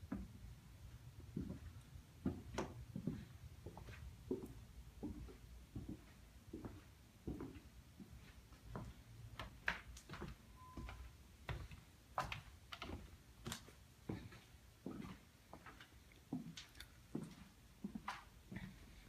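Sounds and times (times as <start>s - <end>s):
faint short beep: 10.5s - 11.2s.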